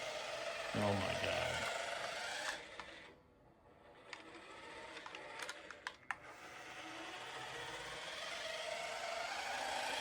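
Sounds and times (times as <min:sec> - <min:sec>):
toy car electric motor whirring: 0:00.0 - 0:10.0.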